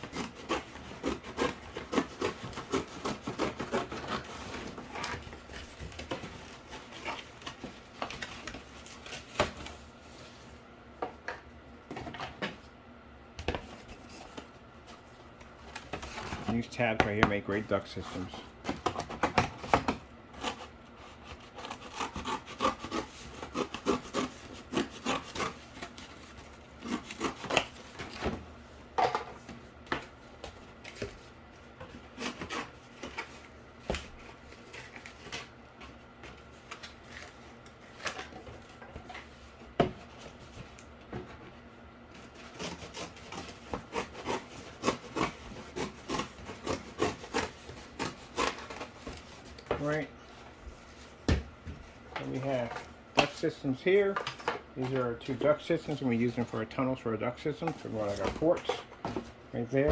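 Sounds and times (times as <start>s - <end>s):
blade cutting cardboard: 0.0s - 9.6s, 18.8s - 28.4s, 32.0s - 33.4s, 42.2s - 49.9s.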